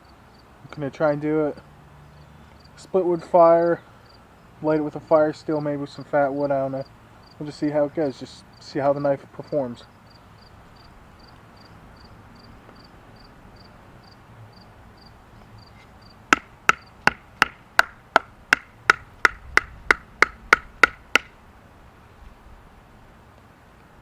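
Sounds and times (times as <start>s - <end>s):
insect chirping: 0.0s - 0.6s, 2.0s - 2.8s, 3.6s - 4.5s, 6.8s - 7.6s, 9.4s - 19.4s
baton striking knife spine: 16.3s - 21.4s.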